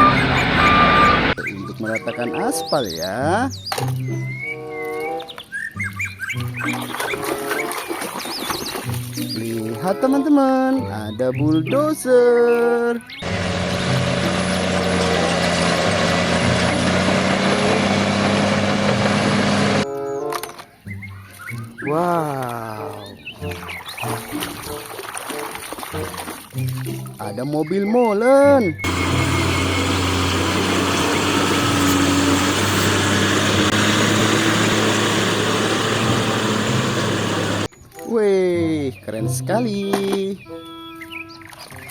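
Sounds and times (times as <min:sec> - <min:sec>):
motor humming with hiss: 0:28.9 - 0:37.7.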